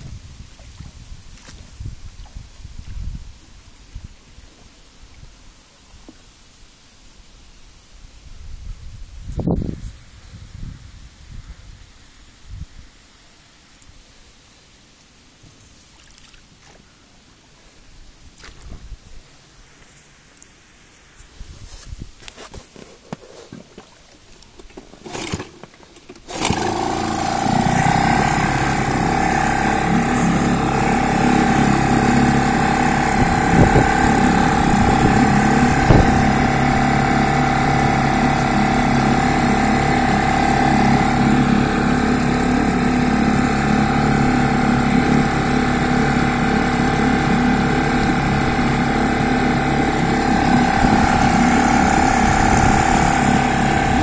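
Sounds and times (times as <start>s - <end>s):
faint rustles and knocks: 19.7s - 26.2s
outboard motor running: 23.0s - 54.0s.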